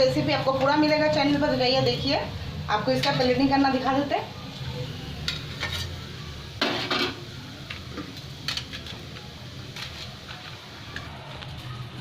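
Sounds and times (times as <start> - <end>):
utensils and dishes clinking: 2.9 - 3.5, 5.2 - 6.0, 6.6 - 12.0.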